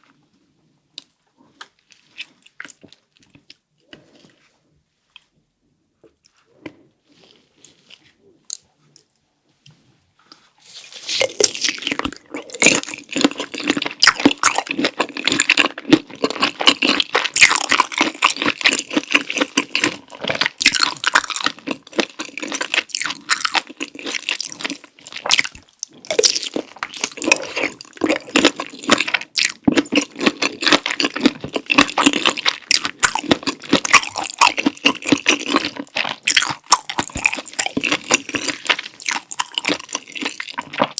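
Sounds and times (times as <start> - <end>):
wet chewing and slurping: 10.3 - 40.9.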